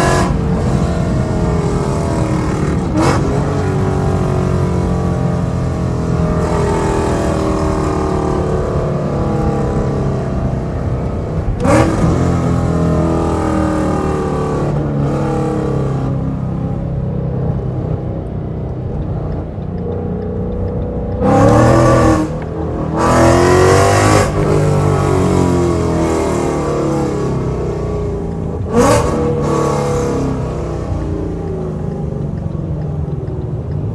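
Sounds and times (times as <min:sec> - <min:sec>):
car engine revving while driving: 0:00.0 - 0:33.9.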